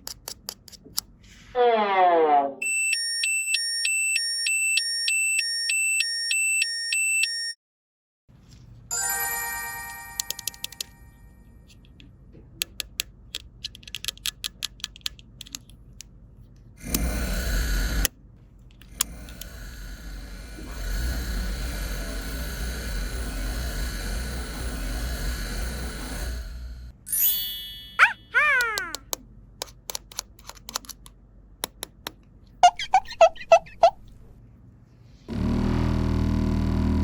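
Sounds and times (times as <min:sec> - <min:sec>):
toy electronic chime: 0:08.9 - 0:11.3, 0:27.1 - 0:28.5
loud hissing noise: 0:19.0 - 0:26.9.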